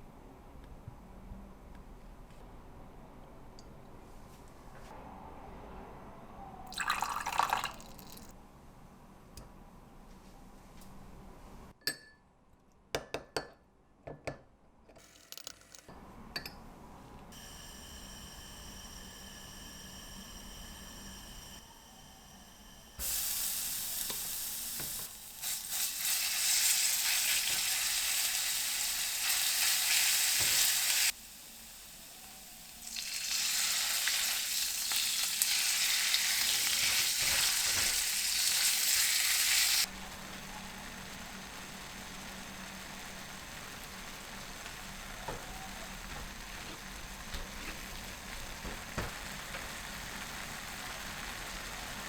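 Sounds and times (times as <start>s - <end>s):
food sizzling in a frying pan: 17.4s - 52.0s.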